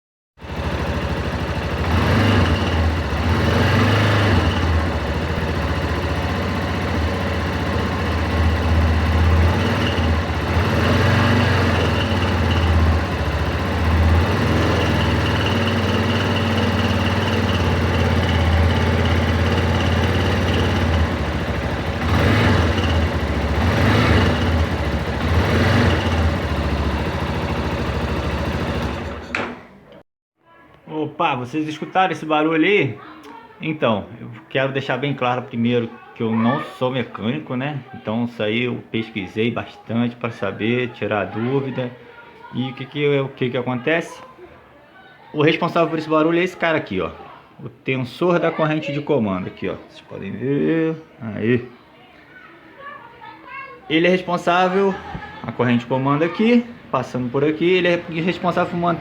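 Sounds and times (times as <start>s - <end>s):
engine tapping noise: 0.4s - 29.4s
motorcycle engine idling and revving: 0.4s - 29.6s, 54.2s - 59.0s.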